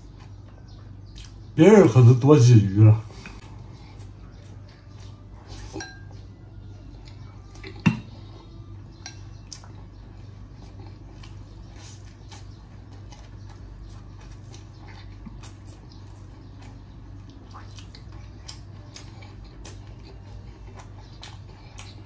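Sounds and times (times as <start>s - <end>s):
low steady hum: 0.0s - 22.0s
utensils clinking on dishes: 5.5s - 6.2s, 8.9s - 9.4s.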